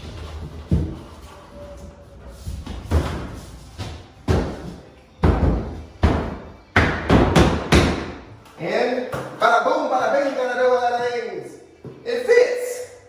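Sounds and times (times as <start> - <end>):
drywall thudding and scraping: 0.0 - 8.2.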